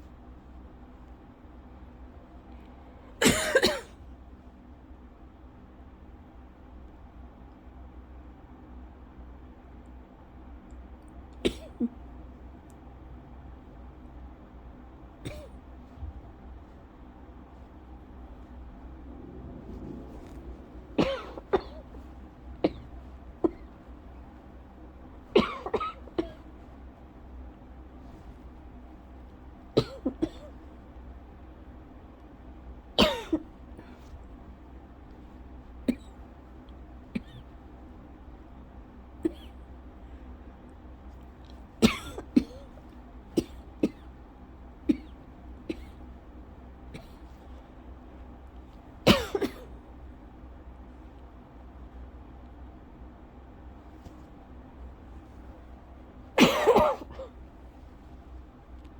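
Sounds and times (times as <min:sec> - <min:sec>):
woman coughing: 0:03.2 - 0:04.0, 0:11.5 - 0:12.0, 0:21.0 - 0:21.8, 0:25.4 - 0:26.4, 0:29.8 - 0:30.5, 0:33.0 - 0:33.4, 0:39.2 - 0:39.5, 0:41.8 - 0:42.6, 0:49.1 - 0:49.7, 0:56.4 - 0:57.4.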